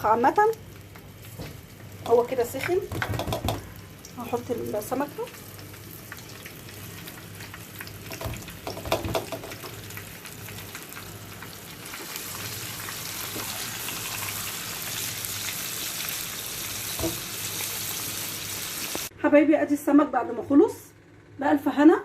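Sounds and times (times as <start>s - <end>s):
knocks against pan: 2.9s - 3.6s, 8.1s - 9.7s
fish sizzling in hot oil: 3.1s - 19.1s.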